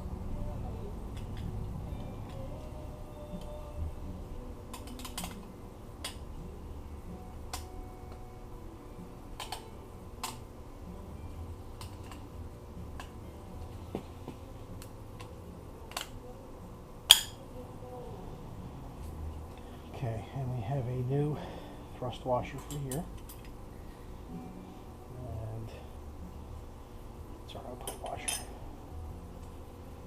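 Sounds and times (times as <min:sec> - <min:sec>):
metal parts clicking and clinking: 0:04.7 - 0:06.2, 0:11.8 - 0:12.3, 0:22.6 - 0:23.6, 0:27.8 - 0:28.5.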